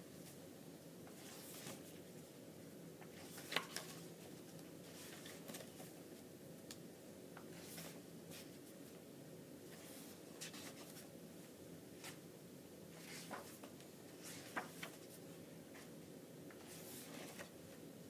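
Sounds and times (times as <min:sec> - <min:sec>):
low room hum: 0:00.0 - 0:18.0
book pages turning: 0:01.1 - 0:02.0, 0:03.0 - 0:05.9, 0:07.4 - 0:08.6, 0:09.7 - 0:11.1, 0:13.0 - 0:15.2, 0:16.5 - 0:17.6.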